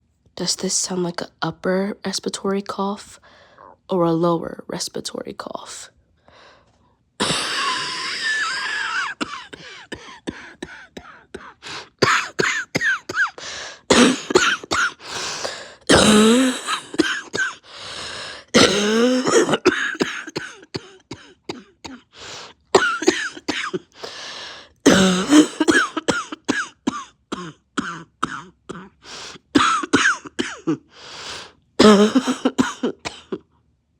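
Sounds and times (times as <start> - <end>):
person coughing: 7.2 - 15.1, 15.9 - 17.6, 18.5 - 22.1, 22.8 - 24.0, 24.8 - 29.0, 29.6 - 30.9, 31.8 - 33.4.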